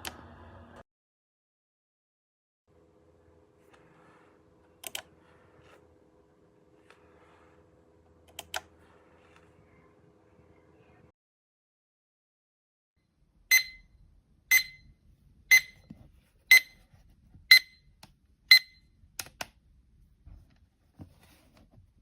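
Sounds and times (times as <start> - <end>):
alarm clock beeping: 13.5 - 14.9, 15.5 - 15.9, 16.5 - 16.8, 17.5 - 17.9, 18.5 - 18.9.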